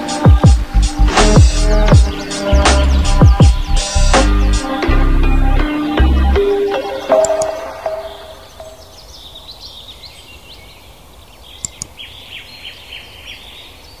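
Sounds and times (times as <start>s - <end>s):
music: 0.0s - 8.8s
small birds chirping: 0.0s - 14.0s
sharp ticks: 11.6s - 12.0s.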